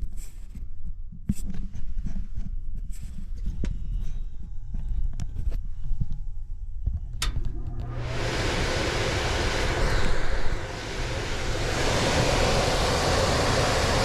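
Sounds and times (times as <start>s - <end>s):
low rumble: 3.8s - 14.0s.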